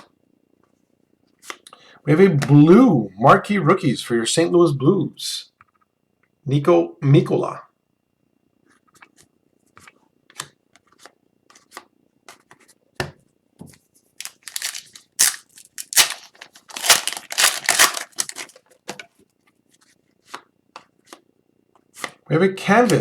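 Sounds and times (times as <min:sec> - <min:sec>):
card pack wrapper tearing: 0:14.2 - 0:18.6
small clicks and rustles: 0:14.2 - 0:20.4.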